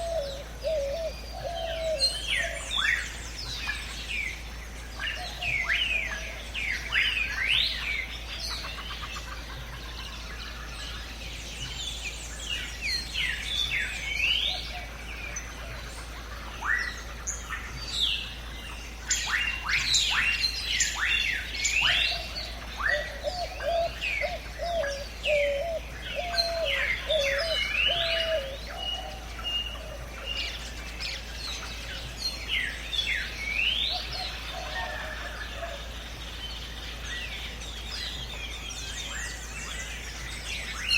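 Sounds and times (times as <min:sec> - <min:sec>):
birds chirping: 0:00.0 - 0:40.9
low warbling bird call: 0:19.1 - 0:30.6.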